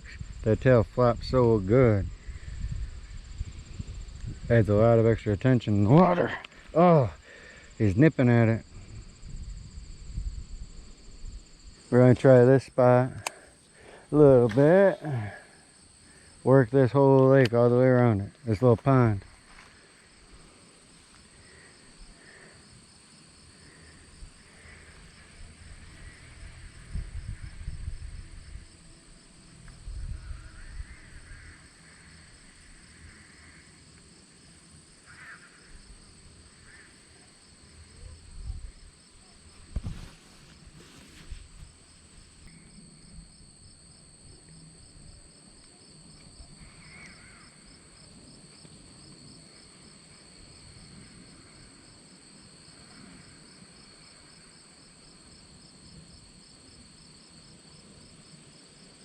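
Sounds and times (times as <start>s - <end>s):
insects chirring: 0.0s - 59.0s.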